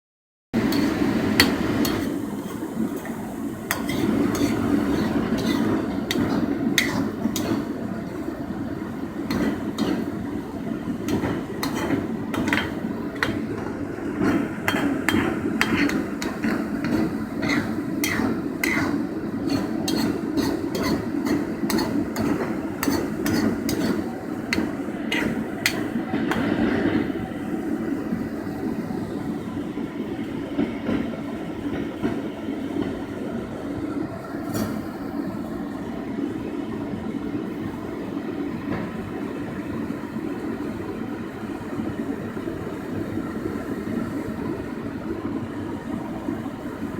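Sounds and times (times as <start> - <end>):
utensil clinking against pot: 0.6 - 7.7, 11.1 - 26.4.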